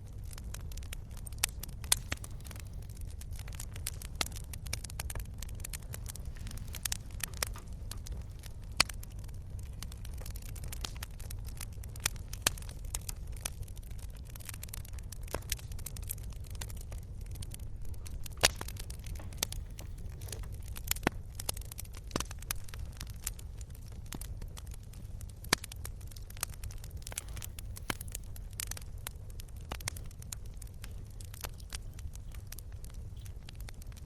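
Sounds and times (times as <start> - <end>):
wood fire crackling: 0.0 - 34.0.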